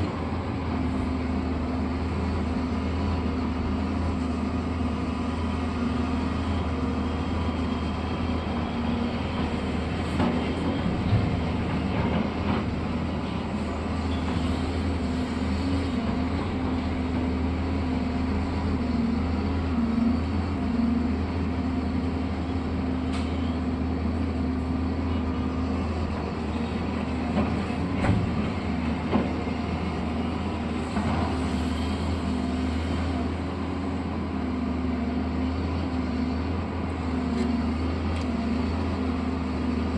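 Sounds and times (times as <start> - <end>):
heavy machinery droning: 0.0 - 39.9.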